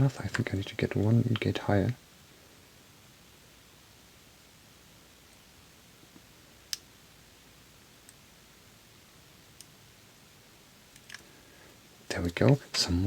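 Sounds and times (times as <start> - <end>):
lock pick clicks: 11.0 - 11.3.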